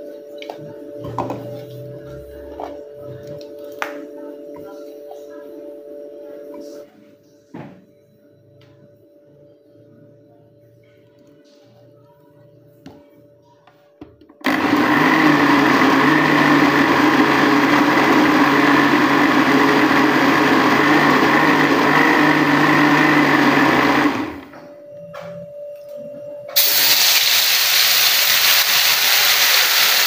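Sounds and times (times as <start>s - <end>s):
electric blender grinding: 14.4s - 24.5s, 26.6s - 30.0s.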